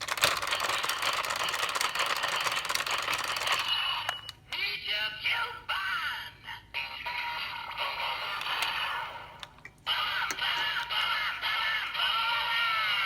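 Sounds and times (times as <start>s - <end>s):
toy music: 0.0s - 4.4s, 9.9s - 13.0s
synthetic voice: 3.6s - 13.0s.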